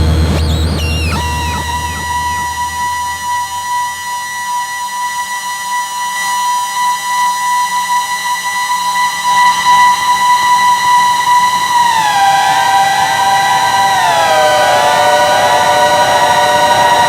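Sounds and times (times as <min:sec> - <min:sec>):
square-wave synth drone: 0:00.0 - 0:17.0.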